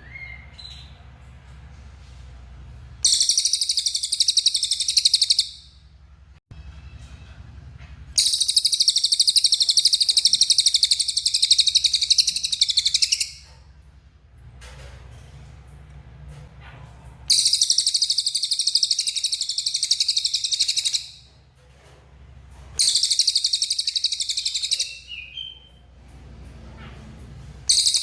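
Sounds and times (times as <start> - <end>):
low background hum: 0.0 - 28.0
bird singing buzzy trills: 3.0 - 5.7, 8.2 - 13.4, 17.3 - 21.2, 22.8 - 25.9, 27.7 - 28.0.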